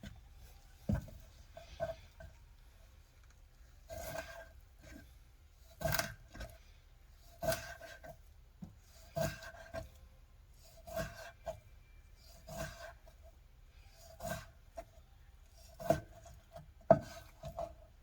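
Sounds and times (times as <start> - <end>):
knife slicing fish: 3.9 - 5.0, 5.6 - 6.6, 7.2 - 8.2, 8.9 - 9.9, 10.6 - 11.6, 12.2 - 13.1, 14.0 - 14.6, 15.7 - 17.6.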